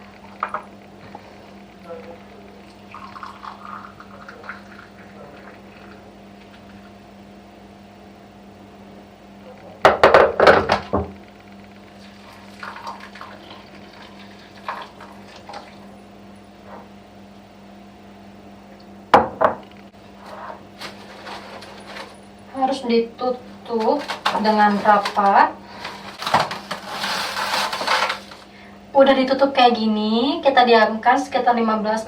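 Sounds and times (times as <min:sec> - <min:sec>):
steady low hum: 0:00.0 - 0:32.0
water poured from kettle: 0:12.2 - 0:15.8.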